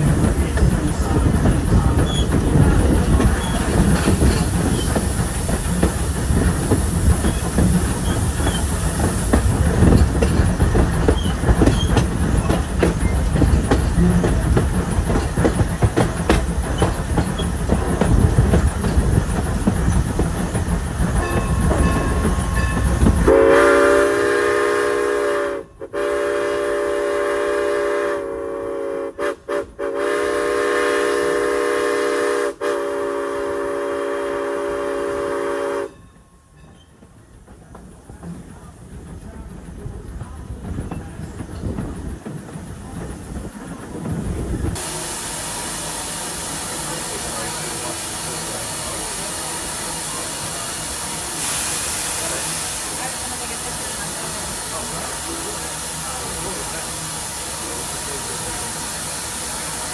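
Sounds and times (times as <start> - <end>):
train coaches clacking on rails: 0.0 - 27.6, 34.6 - 59.9
steam whistle blowing: 23.2 - 36.0.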